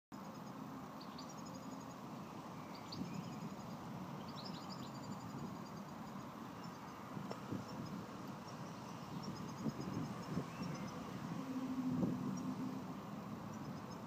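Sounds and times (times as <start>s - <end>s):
small birds chirping: 0.2s - 11.1s, 13.4s - 14.0s
low drone: 10.8s - 13.5s.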